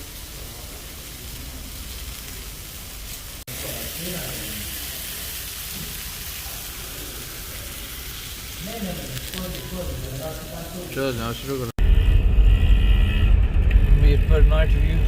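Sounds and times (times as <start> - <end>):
food sizzling: 0.0 - 11.8.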